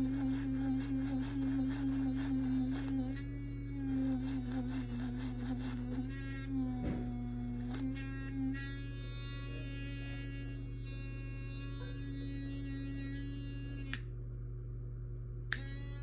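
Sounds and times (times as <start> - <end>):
microwave oven humming: 0.0 - 16.0.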